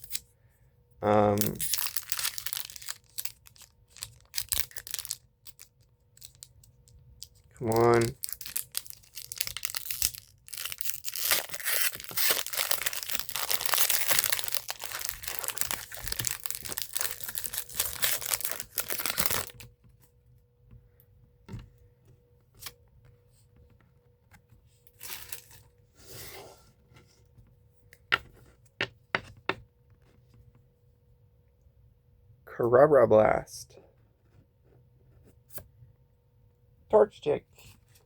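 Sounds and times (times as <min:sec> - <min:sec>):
foil wrapper tearing and crinkling: 0:00.0 - 0:00.2, 0:01.4 - 0:06.5, 0:07.3 - 0:19.6
cards rustling: 0:01.3 - 0:06.6, 0:07.2 - 0:19.6.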